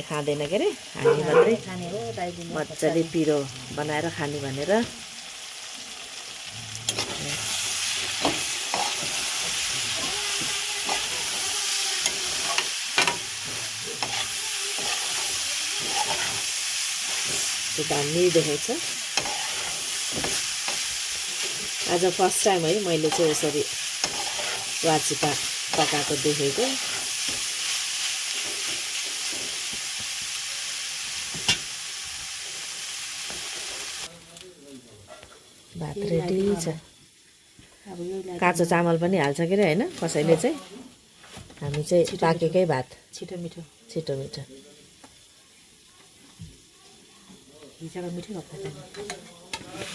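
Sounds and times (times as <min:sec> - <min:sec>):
food sizzling in hot oil: 0:00.0 - 0:49.9
spoon knocking and scraping pan: 0:06.9 - 0:27.6.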